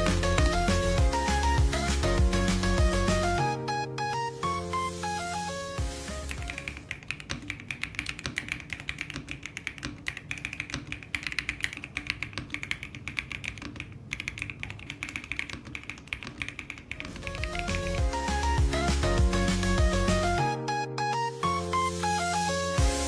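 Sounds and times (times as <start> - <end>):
mechanical keyboard typing: 6.2 - 18.0.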